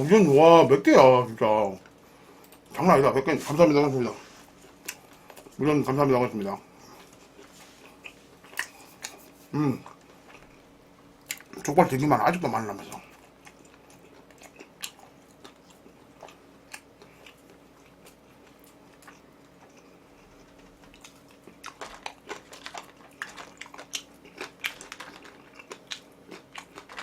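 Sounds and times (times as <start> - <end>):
person chewing food: 4.6 - 5.6, 6.8 - 11.7, 12.9 - 27.0.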